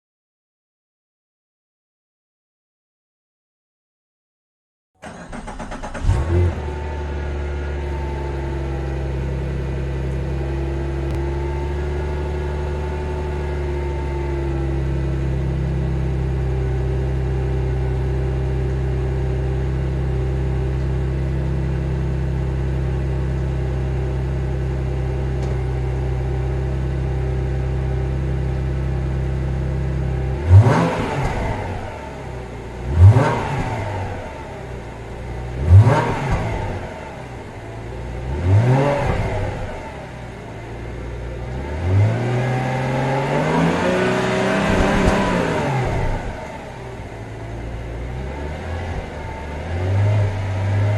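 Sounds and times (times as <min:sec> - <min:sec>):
engine revving: 0:05.0 - 0:14.1, 0:30.2 - 0:50.9
car engine idling: 0:05.0 - 0:30.6, 0:31.4 - 0:41.7, 0:44.1 - 0:50.9.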